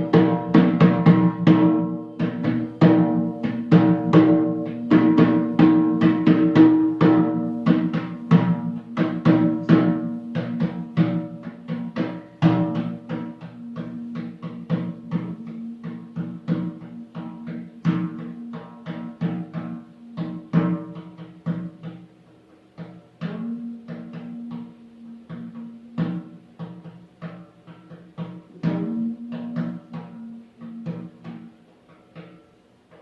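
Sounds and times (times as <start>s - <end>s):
pitched drum strikes: 0.0s - 33.0s
held low tone: 2.1s - 21.4s, 28.5s - 31.5s.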